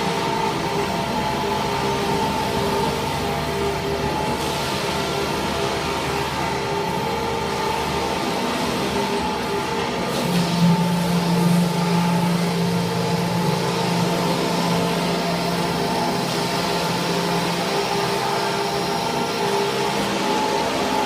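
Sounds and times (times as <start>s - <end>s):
machinery droning: 0.0s - 21.0s
deeper hum: 10.4s - 18.2s.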